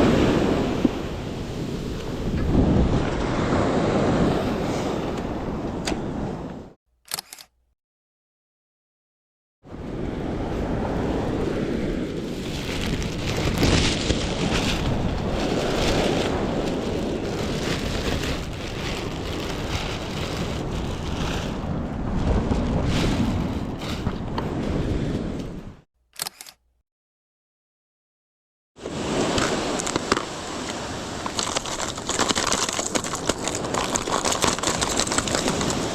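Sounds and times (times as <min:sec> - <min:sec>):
surf on beach: 0:00.0 - 0:06.7, 0:09.7 - 0:25.8, 0:28.8 - 0:35.9
wind buffeting microphone: 0:00.0 - 0:06.7, 0:09.7 - 0:25.8.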